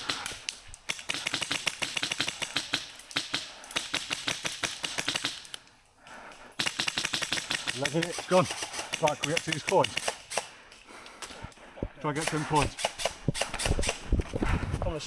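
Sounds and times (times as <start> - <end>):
airsoft gun firing full auto: 6.6 - 9.1.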